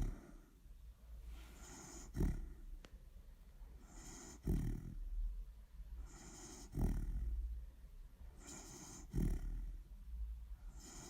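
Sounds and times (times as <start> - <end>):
dog snoring: 0.0 - 0.5, 1.5 - 2.7, 3.8 - 5.2, 6.0 - 7.6, 8.4 - 9.8, 10.7 - 11.0
soft hissing breath: 0.0 - 2.6, 3.8 - 4.6, 6.0 - 6.9, 8.3 - 9.3, 10.6 - 11.0.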